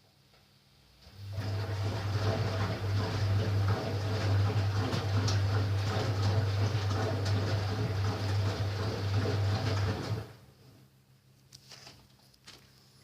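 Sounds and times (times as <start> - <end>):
washing machine running: 1.0 - 10.5.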